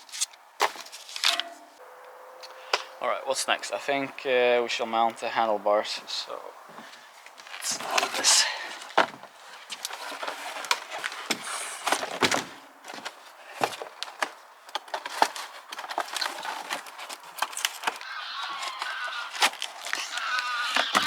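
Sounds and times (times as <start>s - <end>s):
packaging rustling: 9.6s - 21.0s
packing material squeaking: 15.6s - 21.0s.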